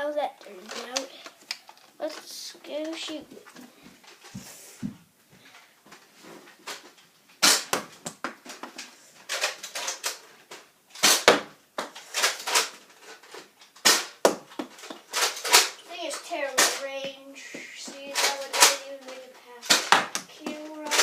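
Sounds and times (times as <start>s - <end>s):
toy blaster plastic clacks: 9.3s - 10.2s, 11.0s - 21.0s.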